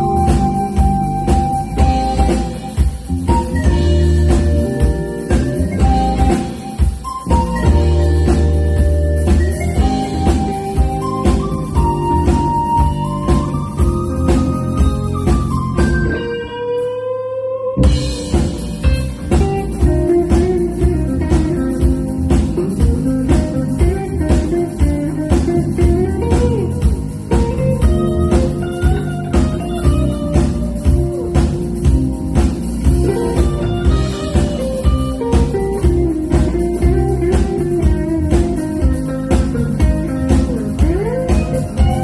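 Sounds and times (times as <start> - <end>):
drum kit beat: 0.0 - 17.0, 17.8 - 42.0
electric guitar: 0.0 - 42.0
live jazz-funk band: 0.0 - 42.0.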